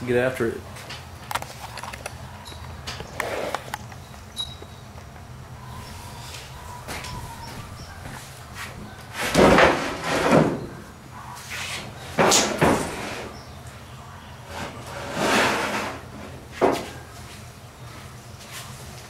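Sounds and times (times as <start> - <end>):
boards scraping and sliding: 3.1 - 3.8, 9.1 - 10.7, 11.4 - 13.4, 14.5 - 16.9.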